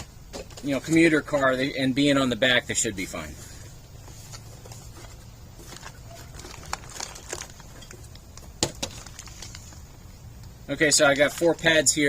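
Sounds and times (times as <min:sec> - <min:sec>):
brake pads and packaging clicking: 0:04.3 - 0:09.8.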